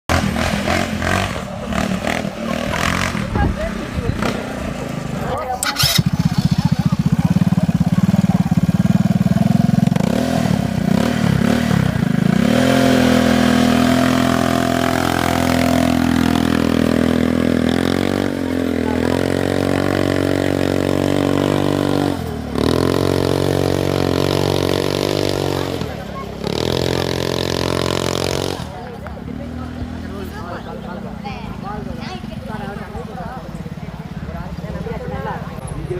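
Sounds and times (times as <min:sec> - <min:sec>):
atv engine revving: 0:00.1 - 0:35.9.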